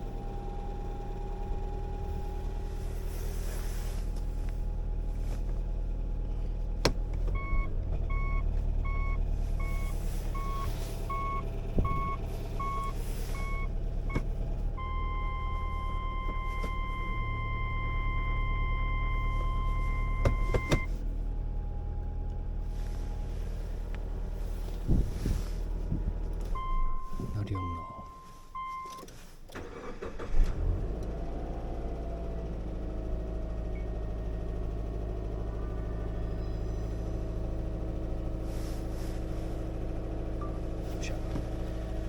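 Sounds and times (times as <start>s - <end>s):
car engine idling: 0.0s - 42.0s
reverse warning beeping: 7.3s - 20.9s, 26.5s - 29.0s
steady warning beep: 7.4s - 14.2s, 14.8s - 20.9s, 26.6s - 29.0s.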